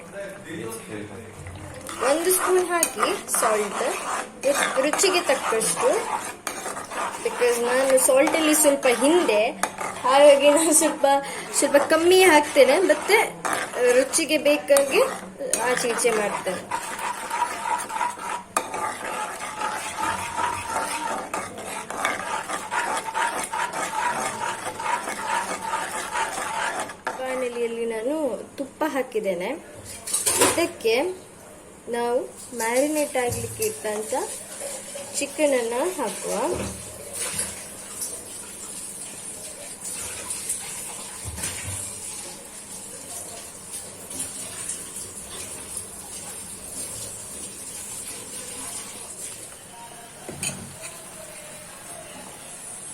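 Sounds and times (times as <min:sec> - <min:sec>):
spoon scraping in a bowl: 0:01.7 - 0:27.8, 0:50.3 - 0:51.4.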